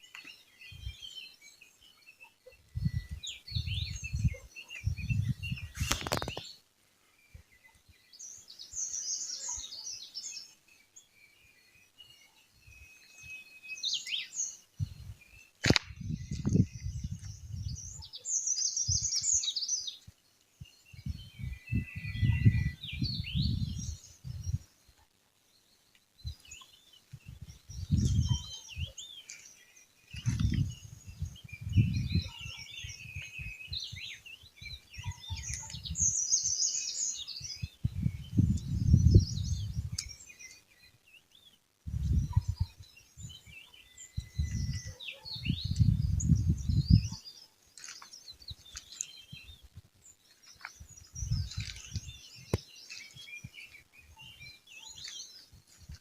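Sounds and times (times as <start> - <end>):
small birds chirping: 0.0 - 56.0.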